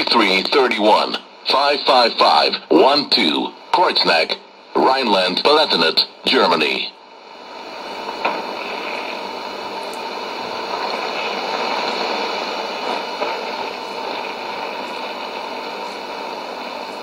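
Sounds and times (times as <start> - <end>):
shortwave radio static hiss: 0.0 - 17.0.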